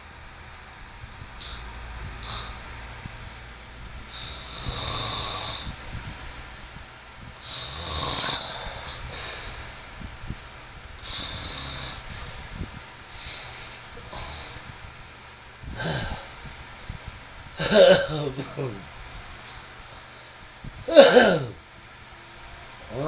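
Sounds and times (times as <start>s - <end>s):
man snoring heavily: 1.4s - 2.6s, 4.1s - 5.8s, 7.4s - 9.5s, 11.0s - 12.3s, 15.8s - 16.3s.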